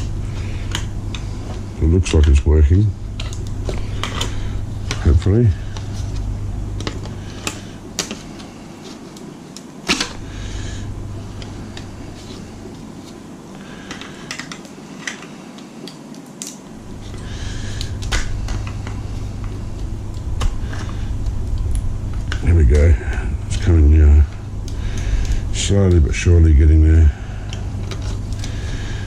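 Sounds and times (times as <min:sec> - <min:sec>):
steady low hum: 0:00.0 - 0:29.0
plastic clicks and cracks: 0:13.8 - 0:16.6.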